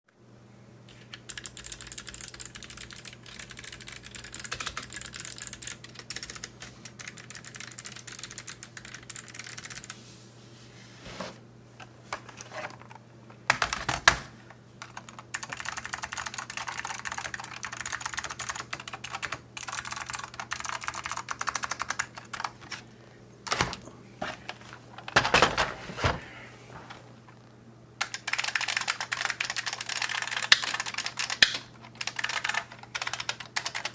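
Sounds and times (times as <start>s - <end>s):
typing on mechanical keyboards: 0.9s - 10.0s, 12.8s - 22.6s, 28.0s - 33.9s.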